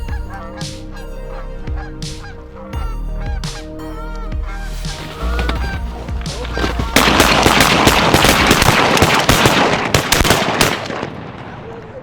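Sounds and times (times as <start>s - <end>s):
geese honking: 0.0s - 9.1s
shotgun fire: 6.3s - 11.6s.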